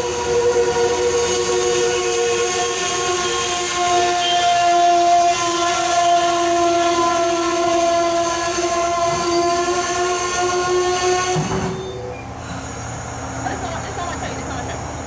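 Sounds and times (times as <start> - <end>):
locomotive horn: 0.0 - 12.0.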